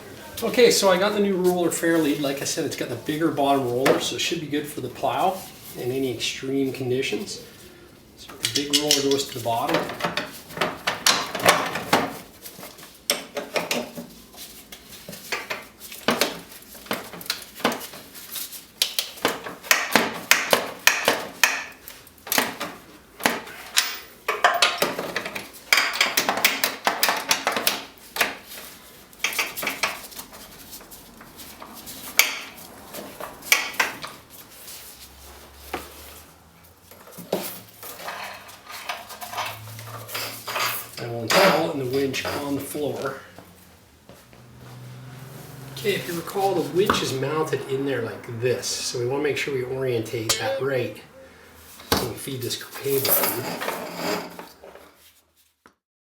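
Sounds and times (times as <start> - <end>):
metallic clinks and rattles of tools: 8.4 - 19.6, 21.8 - 34.2, 36.7 - 43.1.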